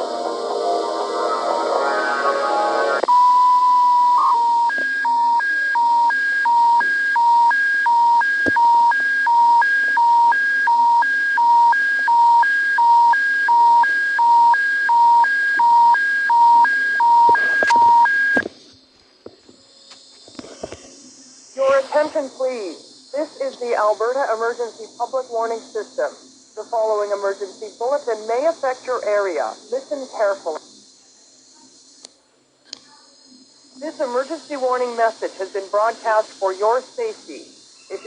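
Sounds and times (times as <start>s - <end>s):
broadcast music: 0.0s - 4.6s
two-tone electronic alarm: 0.0s - 18.4s
steady beep: 1.9s - 18.4s.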